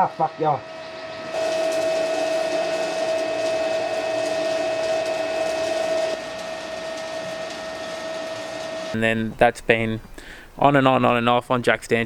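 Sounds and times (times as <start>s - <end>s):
small motor whirring: 0.0s - 9.0s
quiet hiss: 9.0s - 12.0s.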